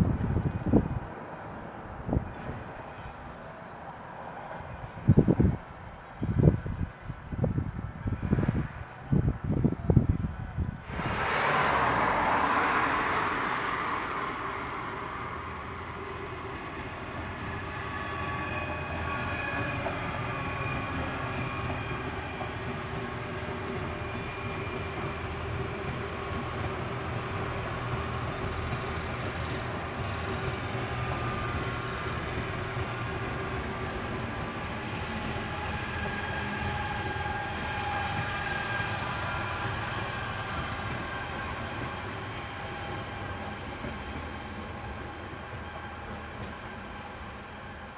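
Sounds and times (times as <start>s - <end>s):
train wheels rumbling on rail: 0.0s - 47.9s
faint thin squeals: 2.9s - 3.3s.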